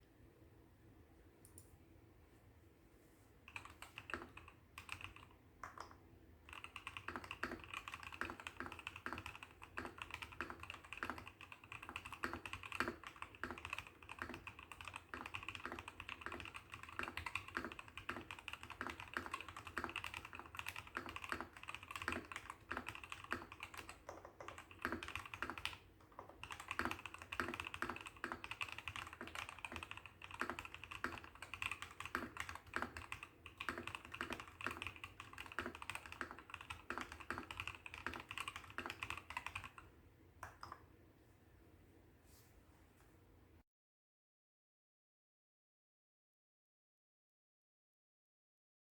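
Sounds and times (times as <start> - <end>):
mechanical keyboard typing: 3.5 - 40.8.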